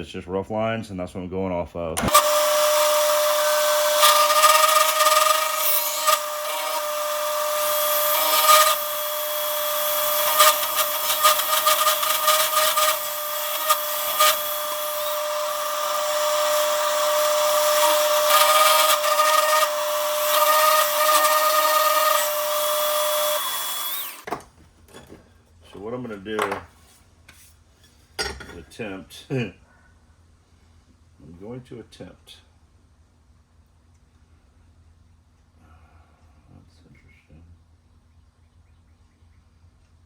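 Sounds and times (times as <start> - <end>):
milling machine whine: 2.0 - 24.2.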